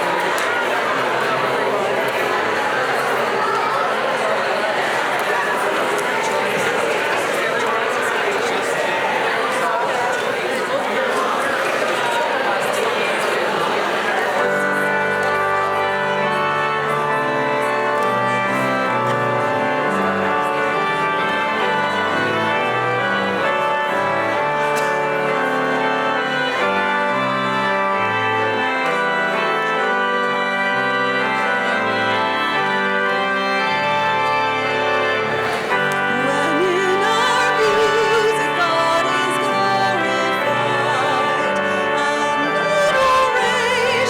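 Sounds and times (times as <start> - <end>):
church organ chords: 0.0 - 11.6, 12.3 - 44.0
person singing with vibrato: 36.0 - 44.0.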